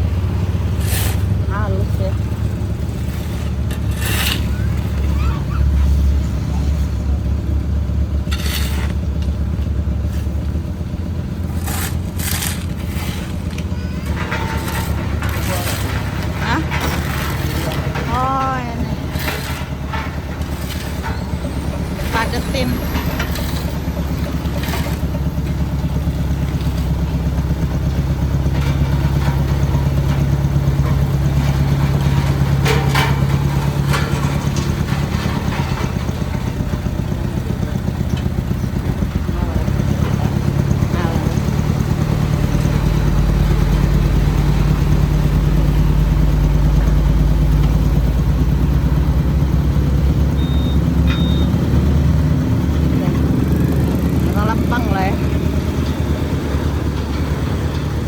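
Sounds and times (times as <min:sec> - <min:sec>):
vehicle engine running: 0:00.0 - 0:58.0
scraping noises: 0:00.6 - 0:07.4, 0:08.2 - 0:09.4, 0:11.4 - 0:27.0, 0:27.8 - 0:37.5
metallic clanks: 0:11.4 - 0:58.0.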